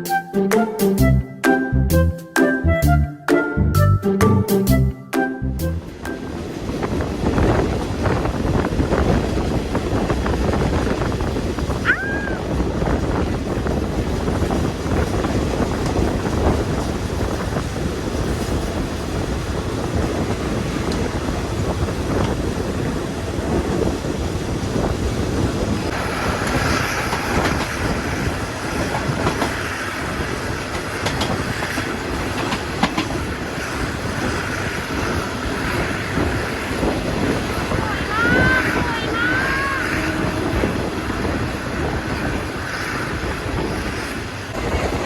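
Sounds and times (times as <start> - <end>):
train rumble: 5.5 - 45.0
wheels clicking over rail joints: 6.0 - 39.1.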